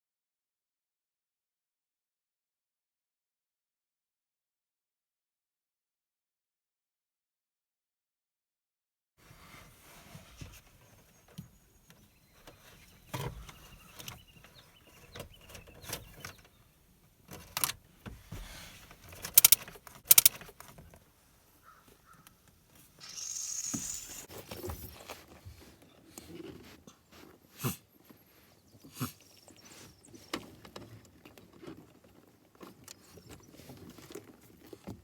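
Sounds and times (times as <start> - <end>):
small clicks and sharp snaps: 19.3 - 20.4.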